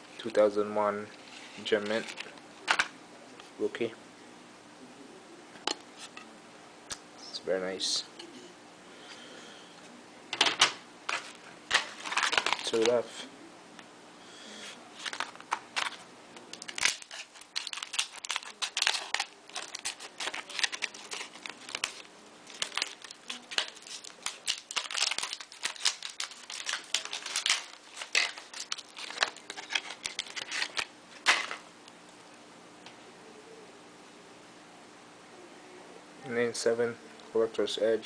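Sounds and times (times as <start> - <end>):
plastic packaging crinkling: 11.1 - 13.0, 15.0 - 31.6.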